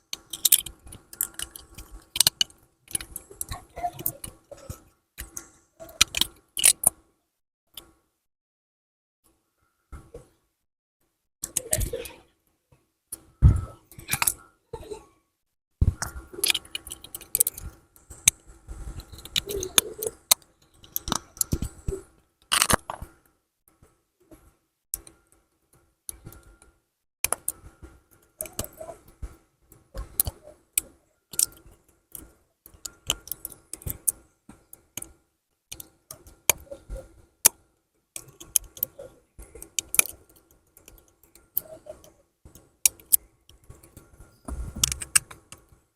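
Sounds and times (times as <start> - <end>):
small parts clicking and scraping: 0.0 - 7.1, 13.1 - 14.9, 15.8 - 45.9.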